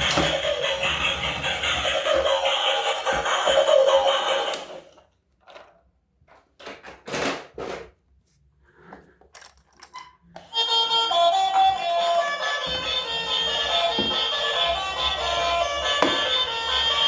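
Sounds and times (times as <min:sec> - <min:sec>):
background music: 0:10.8 - 0:17.0.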